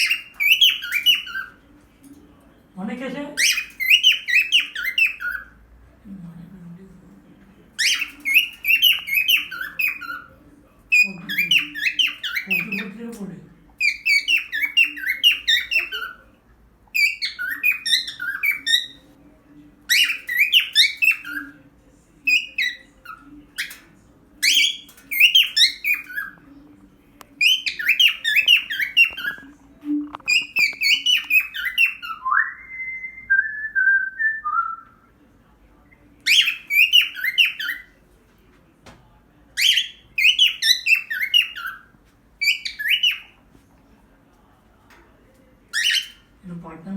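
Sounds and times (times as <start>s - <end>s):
cockatiel warbling and whistling: 0.0s - 1.6s, 7.8s - 10.3s, 13.8s - 16.2s, 17.0s - 19.0s, 27.4s - 29.5s, 30.1s - 33.3s, 36.2s - 37.9s, 39.6s - 43.4s, 45.7s - 46.2s.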